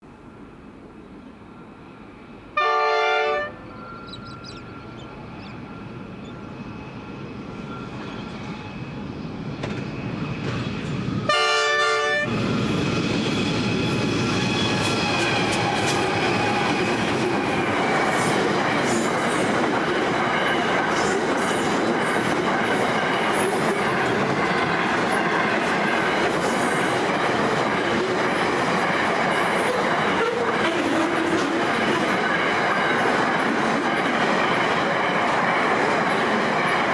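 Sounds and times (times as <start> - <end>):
freight train rumbling: 0.0 - 36.9
train horn blasts: 2.6 - 4.2, 11.3 - 12.3.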